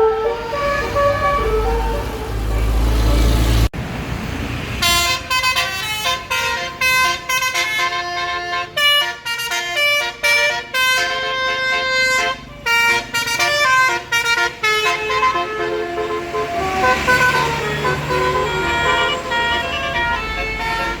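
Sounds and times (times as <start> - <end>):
multi-note bus horn melody: 0.0 - 3.7, 4.8 - 21.0
bus engine rumble: 0.0 - 21.0.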